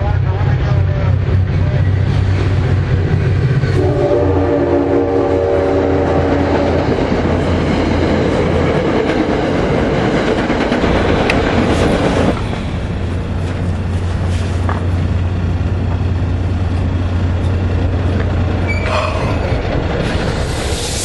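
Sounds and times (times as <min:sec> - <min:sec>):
locomotive engine running: 0:00.0 - 0:20.7
rolling train noise: 0:00.0 - 0:21.0
train horn chord: 0:03.7 - 0:06.8.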